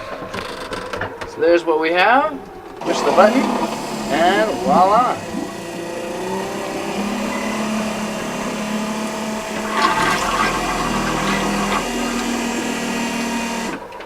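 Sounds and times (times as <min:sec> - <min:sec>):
pump motor hum: 0:02.8 - 0:14.0
rushing water: 0:02.8 - 0:14.0.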